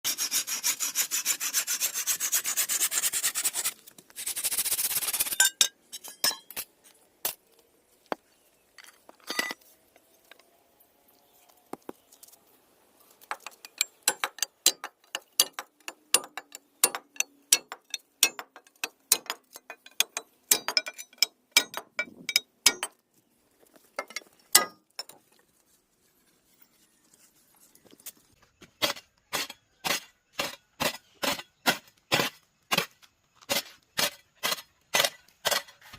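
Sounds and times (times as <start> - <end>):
wood being rasped: 0.1 - 5.3.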